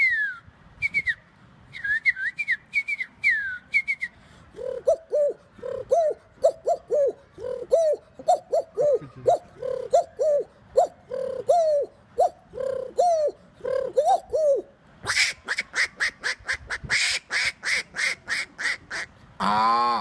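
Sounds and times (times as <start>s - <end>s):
person imitating bird calls: 4.5s - 20.0s.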